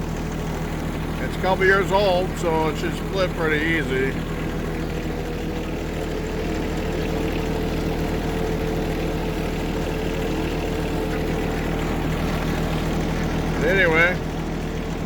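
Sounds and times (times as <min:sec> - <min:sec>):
tractor diesel engine running: 0:00.0 - 0:15.0.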